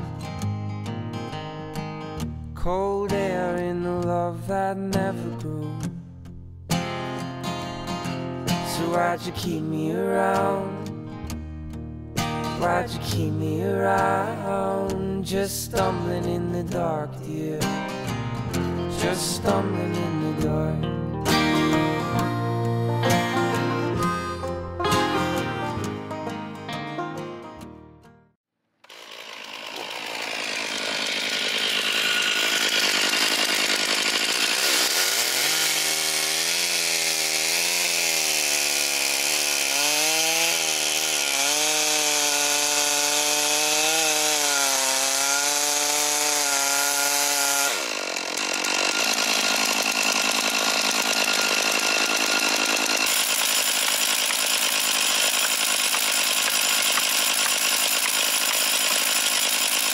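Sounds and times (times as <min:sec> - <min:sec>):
chainsaw cutting wood: 0:06.7 - 0:11.5, 0:12.2 - 0:20.7, 0:28.7 - 0:59.9.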